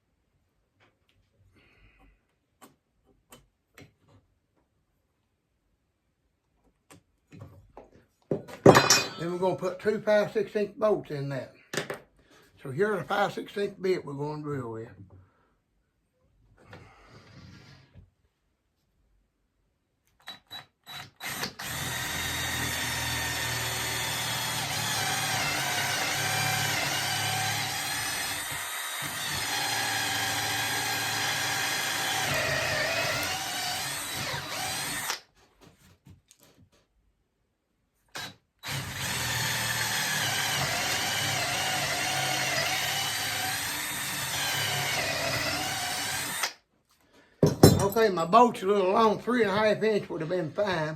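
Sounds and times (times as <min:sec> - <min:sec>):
power drill boring through wood: 0:20.2 - 0:35.3, 0:38.1 - 0:46.6.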